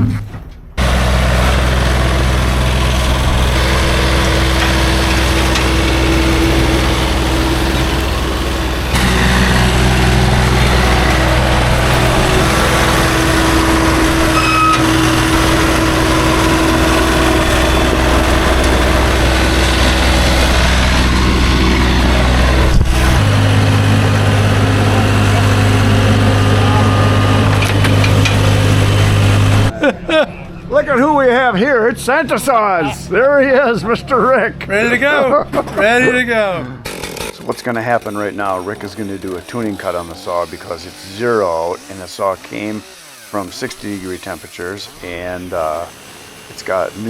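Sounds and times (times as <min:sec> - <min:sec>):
engine idling: 0:00.8 - 0:29.7.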